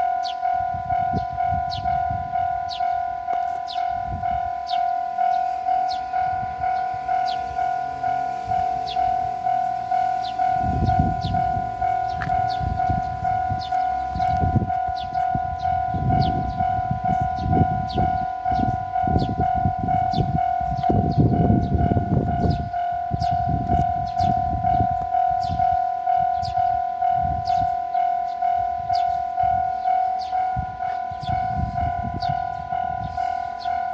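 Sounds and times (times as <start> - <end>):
electric train rumbling past: 0.0 - 33.9
level crossing bell ringing: 0.0 - 33.9.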